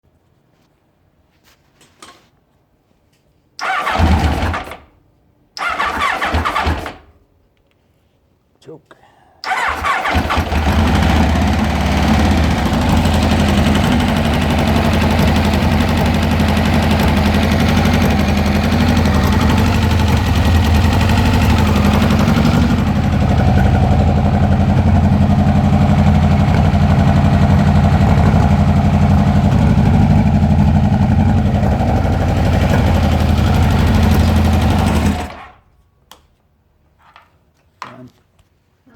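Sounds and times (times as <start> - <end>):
motorcycle engine misfiring: 3.6 - 5.0, 5.6 - 7.1, 9.4 - 35.6.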